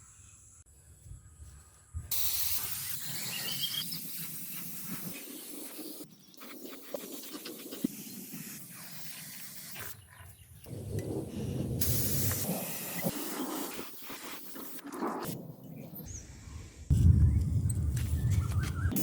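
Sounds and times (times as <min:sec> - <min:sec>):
hissing jet of air: 0:02.1 - 0:06.0, 0:11.3 - 0:14.8.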